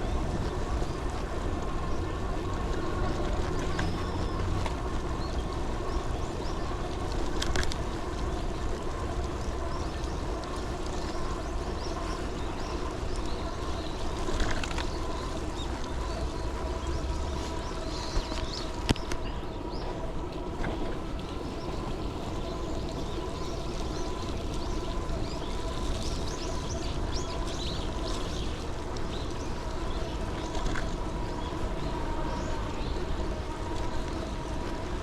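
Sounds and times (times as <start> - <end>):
faint constant whine: 0.0 - 35.0
road noise on wet pavement: 0.0 - 35.0
wind noise: 0.0 - 35.0.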